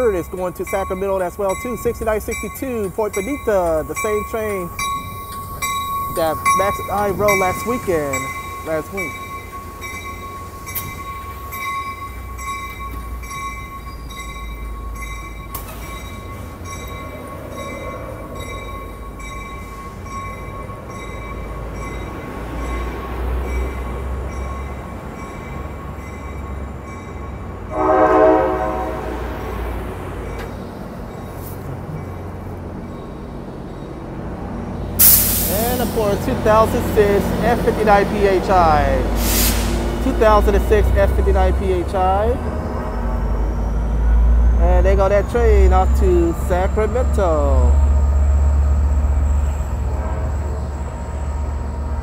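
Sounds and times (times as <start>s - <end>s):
steady higher tones: 0.0s - 22.2s, 23.6s - 32.3s, 44.6s - 52.0s
diesel locomotive rumbling: 0.0s - 52.0s
train horn blast: 27.7s - 29.8s, 49.8s - 50.8s.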